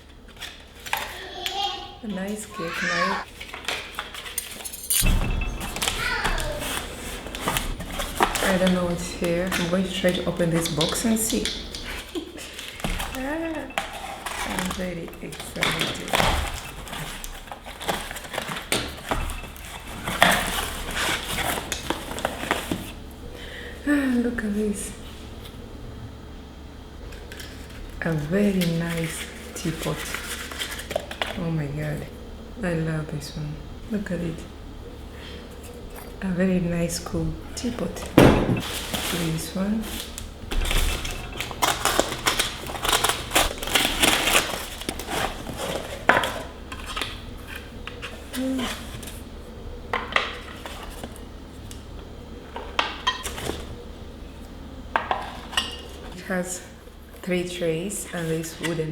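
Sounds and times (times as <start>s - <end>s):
packaging rustling and crinkling: 5.4s - 23.1s, 27.1s - 31.4s, 37.6s - 49.4s, 50.1s - 51.9s.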